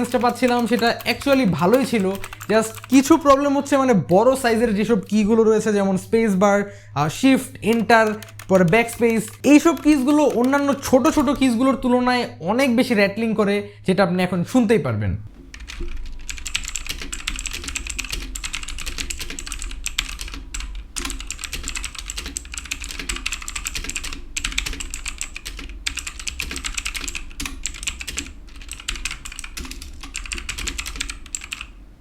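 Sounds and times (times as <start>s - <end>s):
mechanical keyboard key clicks: 7.7s - 10.8s.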